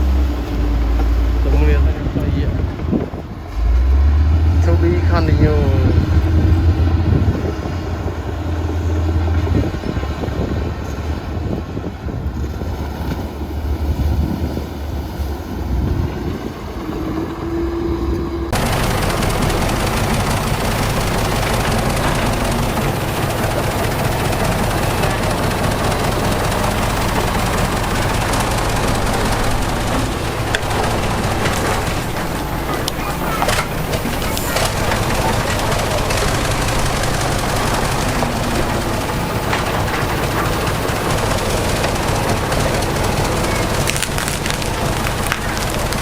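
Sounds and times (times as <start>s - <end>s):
diesel machinery engine rattling: 0.0s - 46.0s
hissy machine noise: 15.6s - 46.0s.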